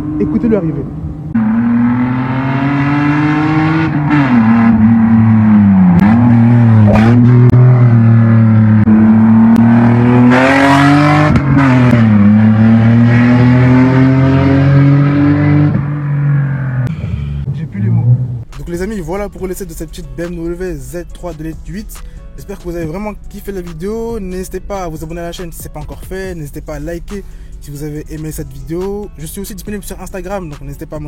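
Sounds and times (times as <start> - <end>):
car engine accelerating hard: 0.0 - 18.5.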